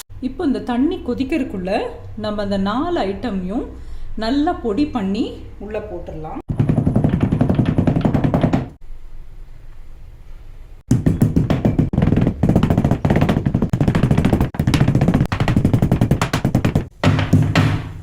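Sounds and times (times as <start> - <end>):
background music with quick beat: 10.9 - 18.0.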